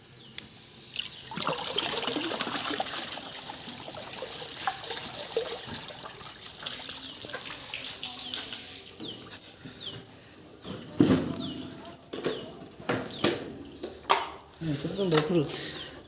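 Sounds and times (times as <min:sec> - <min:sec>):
water splashing and trickling: 0:00.8 - 0:09.4.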